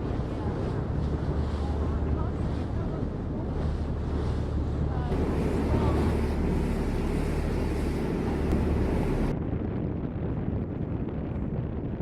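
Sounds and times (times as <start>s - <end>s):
boat engine droning: 0.0s - 9.3s
rushing water: 0.0s - 9.3s
wind buffeting microphone: 0.0s - 12.0s.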